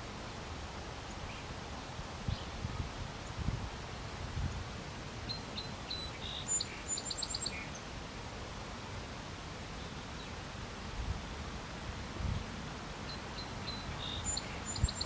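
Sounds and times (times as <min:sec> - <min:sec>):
low outdoor background noise: 0:00.0 - 0:15.0
songbird chirping: 0:05.3 - 0:07.9, 0:13.0 - 0:15.0.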